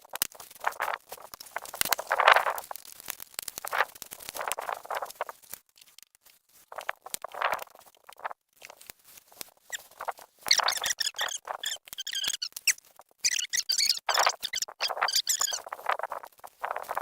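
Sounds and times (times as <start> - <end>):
plastic siding scraping and squeaking: 10.5 - 15.8.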